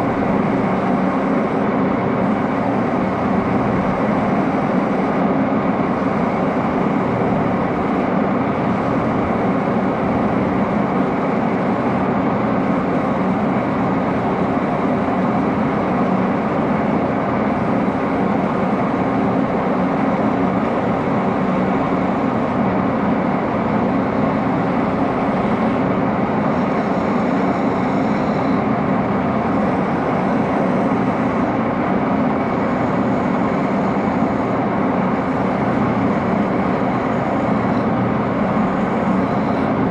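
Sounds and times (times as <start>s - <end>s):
metal lathe humming: 23.7s - 39.9s.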